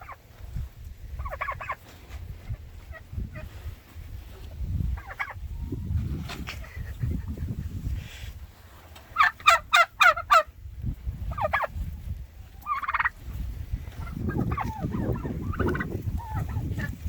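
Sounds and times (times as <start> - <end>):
turkeys gobbling: 0.0 - 0.3, 1.1 - 3.5, 4.4 - 5.8, 8.8 - 10.6, 11.2 - 11.8, 12.4 - 17.0.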